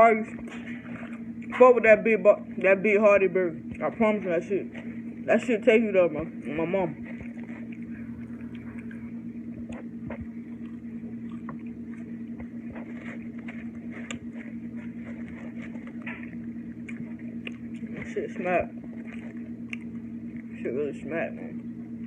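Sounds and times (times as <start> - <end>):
steady low hum: 0.0 - 22.0
person chewing: 6.8 - 20.6.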